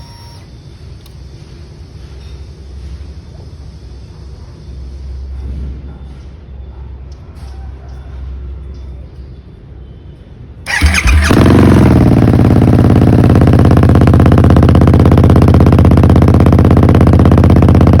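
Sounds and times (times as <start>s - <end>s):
starter motor whine: 0.0s - 0.5s, 10.7s - 13.8s
motorcycle engine idling: 10.7s - 18.0s.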